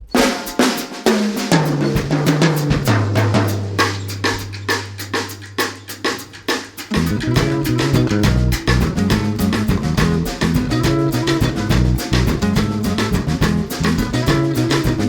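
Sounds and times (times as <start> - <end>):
drum beat: 0.0 - 15.0
bass line: 6.9 - 15.0.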